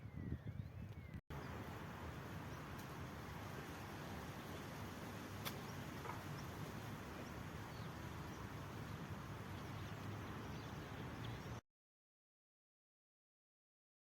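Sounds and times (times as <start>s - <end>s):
low rumble and hiss: 1.4s - 11.6s
distant bird chirps: 3.7s - 11.6s.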